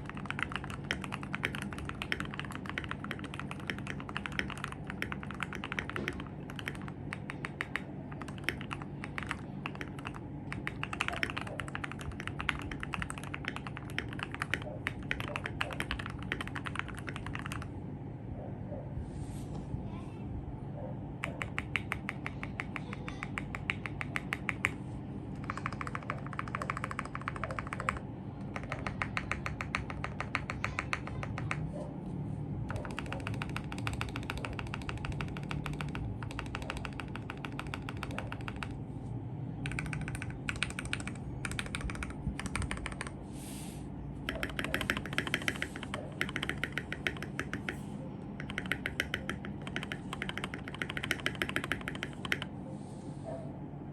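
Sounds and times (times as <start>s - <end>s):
mechanical keyboard typing: 0.0s - 17.7s, 21.2s - 24.8s, 25.4s - 31.7s, 32.7s - 38.8s, 39.6s - 43.2s, 44.2s - 47.8s, 48.4s - 52.5s.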